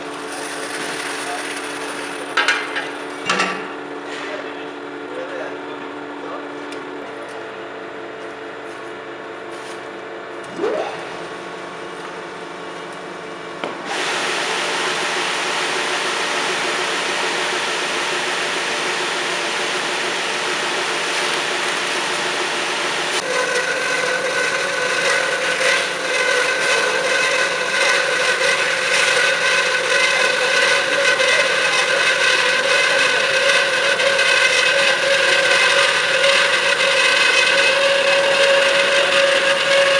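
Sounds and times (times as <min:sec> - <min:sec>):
band saw humming: 0:10.3 - 0:39.9
saw rasping through metal: 0:23.2 - 0:39.9.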